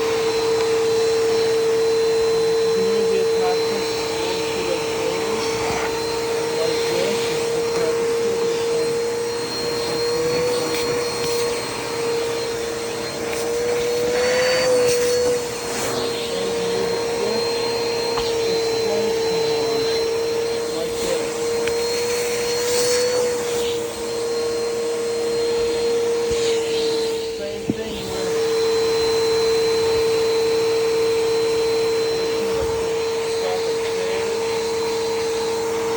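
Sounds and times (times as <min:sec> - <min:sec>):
vacuum cleaner running: 0:00.0 - 0:35.9.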